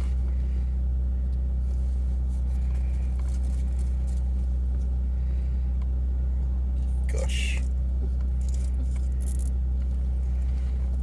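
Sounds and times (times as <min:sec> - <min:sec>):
car engine idling: 0:00.0 - 0:11.0
faint clicks and rustles: 0:01.3 - 0:05.0.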